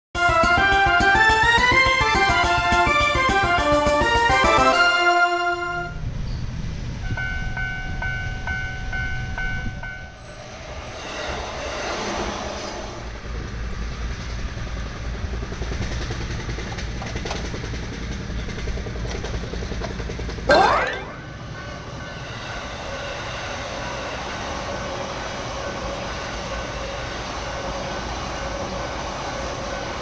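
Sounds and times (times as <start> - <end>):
train wheels rumbling on rails: 6.0 - 20.5, 21.4 - 30.0.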